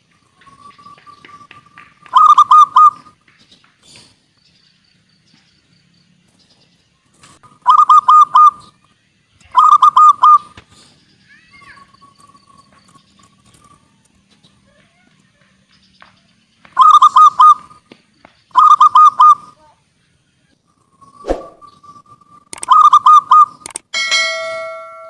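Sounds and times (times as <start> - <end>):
faint bird chirps and trills: 0.0 - 23.8
dove cooing: 2.1 - 3.1, 7.6 - 8.6, 9.5 - 10.5, 16.8 - 17.7, 18.6 - 19.5, 22.7 - 23.6.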